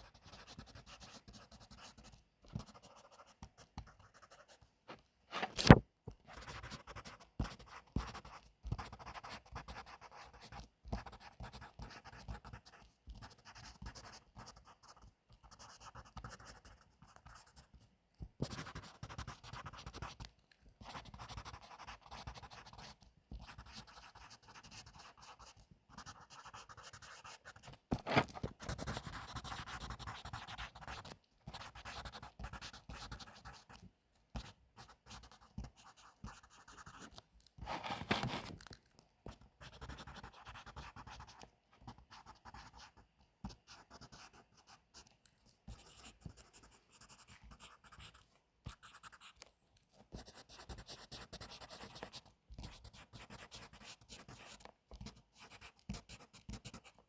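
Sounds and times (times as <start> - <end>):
pencil writing on paper: 0.0 - 17.8, 18.4 - 38.6, 39.2 - 49.5, 50.1 - 57.0.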